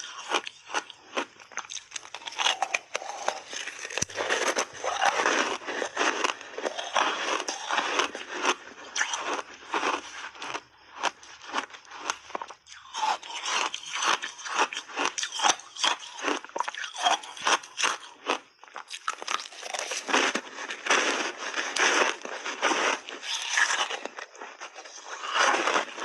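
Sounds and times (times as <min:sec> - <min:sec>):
ice crunching being chewed: 0:00.0 - 0:26.0.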